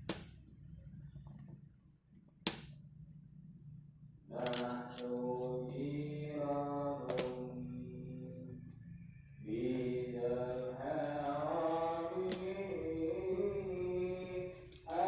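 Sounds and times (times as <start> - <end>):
person chanting long notes: 4.4 - 15.0.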